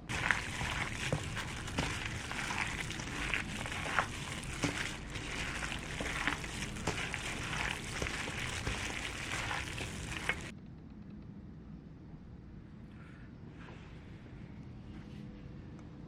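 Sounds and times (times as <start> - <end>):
food sizzling in a frying pan: 0.1 - 10.5.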